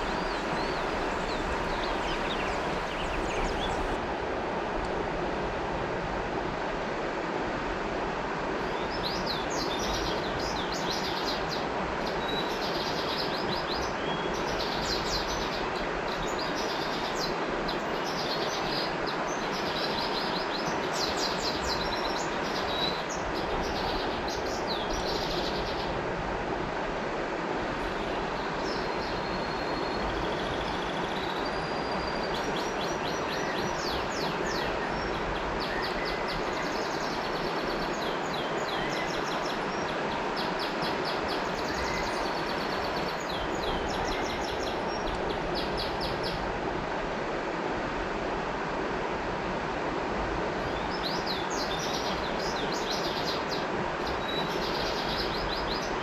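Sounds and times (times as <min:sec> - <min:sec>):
small birds chirping: 0:00.0 - 0:04.0
river water rushing: 0:00.0 - 0:56.0.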